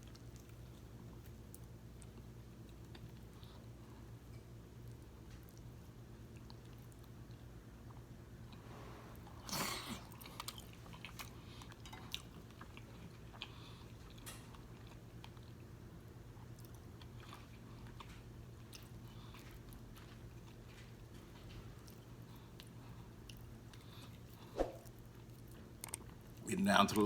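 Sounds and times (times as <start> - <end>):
chewing and mouth sounds: 0.0 - 26.4.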